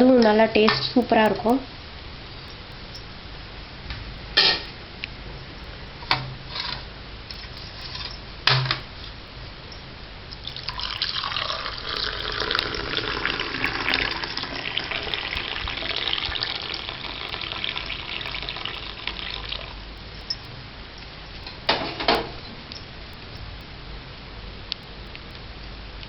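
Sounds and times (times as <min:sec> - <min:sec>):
milk pouring into a cup: 0:10.4 - 0:19.8.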